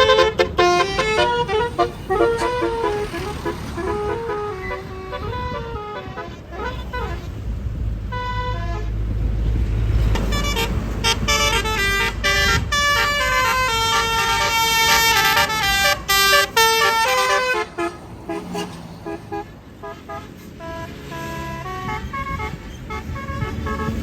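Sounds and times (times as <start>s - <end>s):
bus horn playing melody: 0.0s - 9.3s, 9.9s - 24.0s
bus engine rumble: 0.0s - 24.0s.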